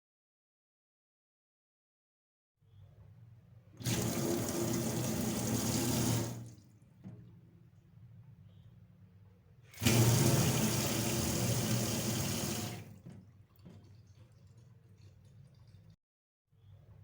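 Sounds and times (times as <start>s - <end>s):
water gushing into sink: 3.8s - 6.6s, 9.8s - 16.0s
faint water drips: 12.7s - 16.0s.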